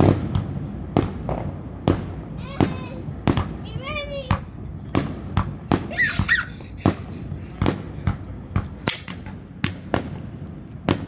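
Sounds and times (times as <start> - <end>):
fireworks banging: 0.0 - 11.0.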